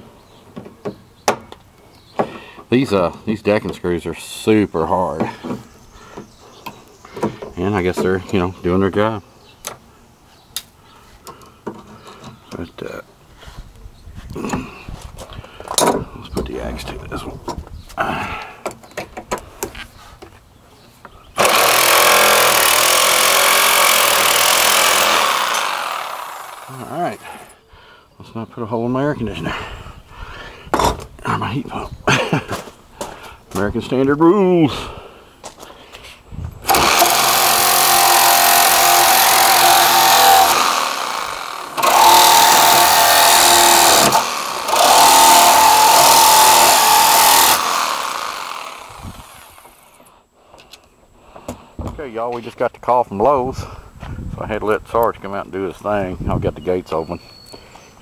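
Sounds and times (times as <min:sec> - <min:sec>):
power saw cutting wood: 0:21.4 - 0:27.5, 0:36.7 - 0:50.0.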